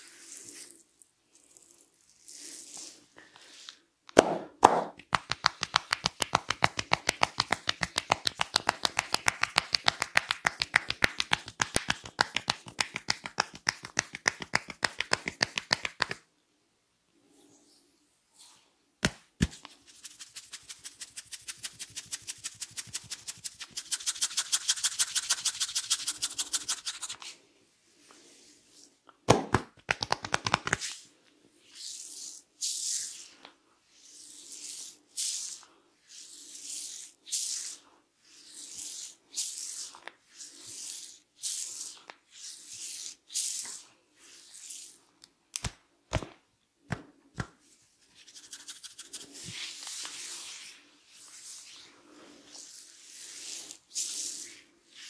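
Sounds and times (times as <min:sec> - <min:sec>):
hands slapping head: 0:04.1 - 0:16.2, 0:19.0 - 0:19.7, 0:29.3 - 0:31.0, 0:45.6 - 0:47.6
fast tapping on head: 0:04.6 - 0:16.2, 0:29.3 - 0:30.8
hands rubbing head: 0:04.8 - 0:16.3, 0:19.0 - 0:27.4, 0:29.6 - 0:31.0, 0:47.4 - 0:55.0.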